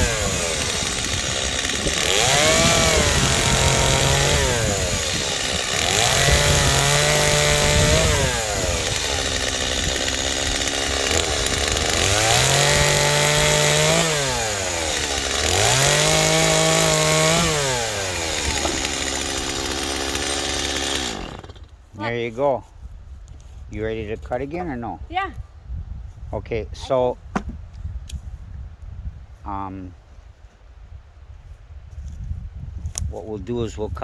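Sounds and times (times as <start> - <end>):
chainsaw revving: 0.0 - 21.7.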